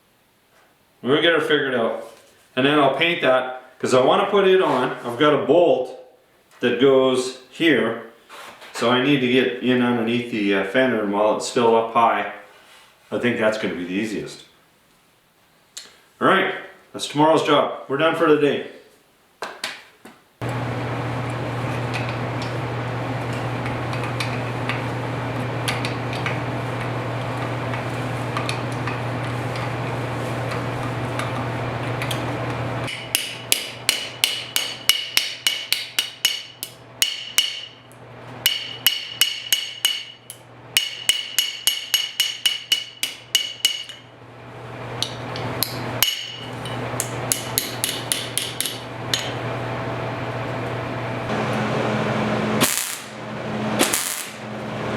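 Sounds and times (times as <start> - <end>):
machine humming and hissing: 20.4 - 33.0, 44.2 - 54.9
hammer striking metal: 32.9 - 37.8, 38.4 - 44.0, 45.0 - 49.4.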